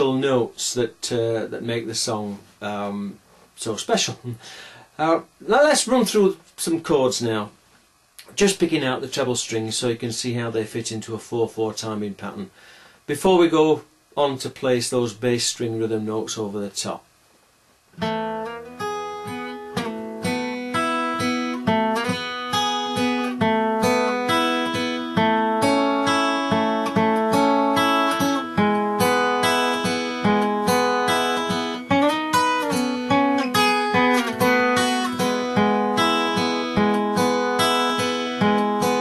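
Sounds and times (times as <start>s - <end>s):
fingerpicked acoustic guitar: 17.9s - 39.0s.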